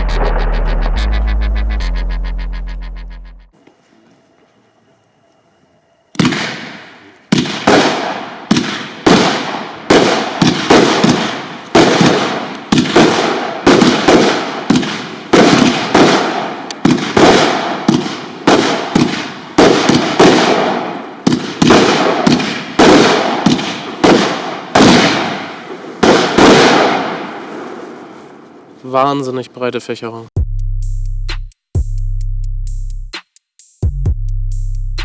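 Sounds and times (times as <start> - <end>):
firework bangs: 6.2 - 28.0.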